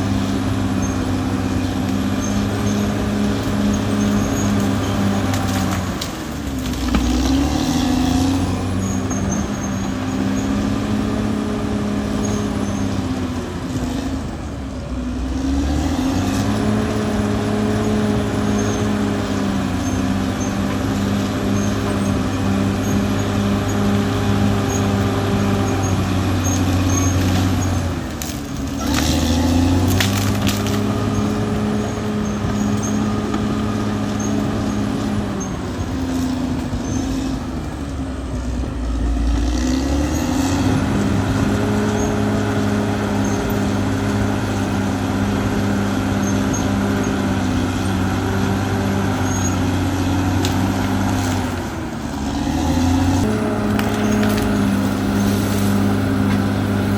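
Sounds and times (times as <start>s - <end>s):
bulldozer diesel engine running: 0.0s - 56.9s.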